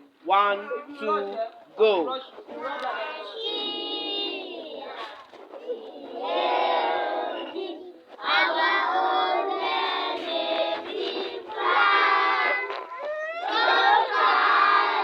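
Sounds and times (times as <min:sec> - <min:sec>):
children singing together: 0:03.2 - 0:15.0.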